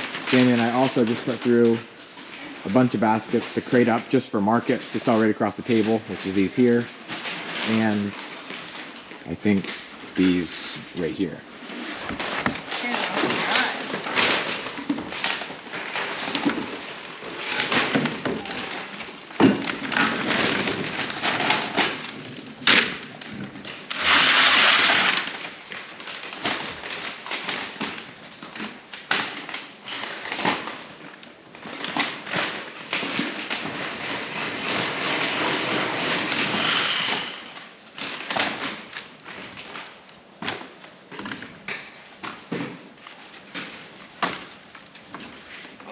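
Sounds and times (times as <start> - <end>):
potatoes rattling rush: 9.3 - 11.9.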